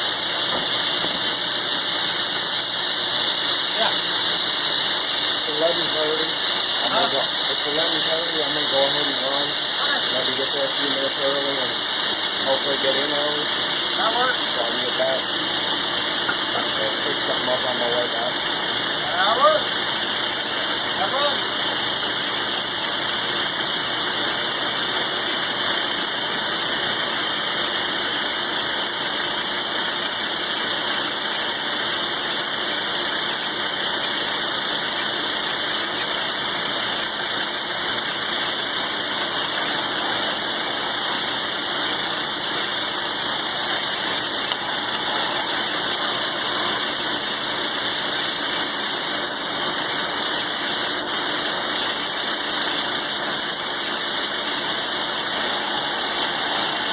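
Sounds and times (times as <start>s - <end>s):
milling machine cutting steel: 0.0s - 56.9s.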